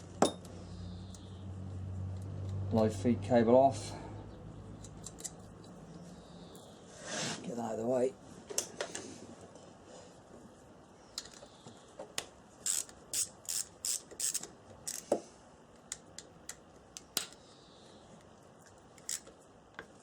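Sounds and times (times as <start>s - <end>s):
hand tools clicking on metal: 12.7s - 15.1s.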